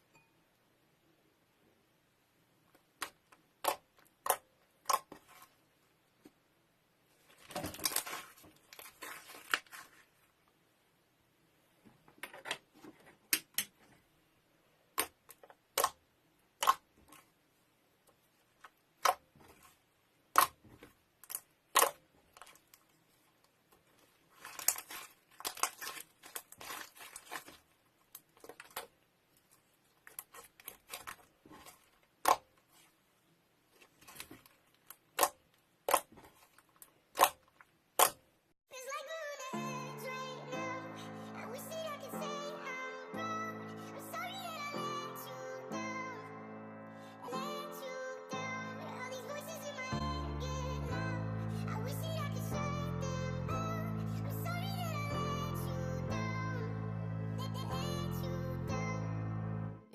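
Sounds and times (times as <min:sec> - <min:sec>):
slime crackling and crinkling: 0:07.1 - 0:10.4, 0:18.6 - 0:38.2
slime popping and clicking: 0:16.6 - 0:16.9, 0:21.2 - 0:22.0.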